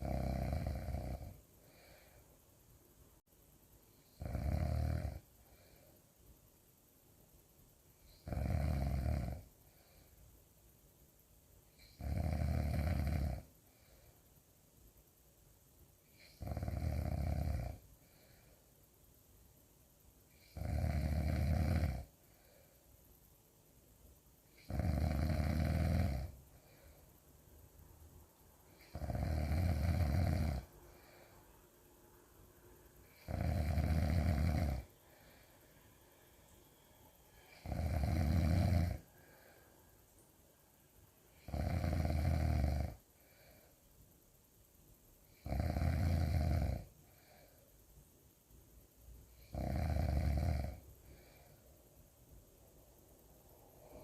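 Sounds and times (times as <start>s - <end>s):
person snoring loudly: 0.0s - 2.0s, 4.2s - 5.2s, 8.1s - 9.5s, 11.8s - 13.5s, 16.2s - 17.8s, 20.4s - 22.1s, 24.6s - 26.4s, 28.8s - 31.2s, 33.0s - 35.4s, 37.4s - 39.5s, 41.3s - 43.0s, 45.4s - 47.4s, 49.4s - 51.4s.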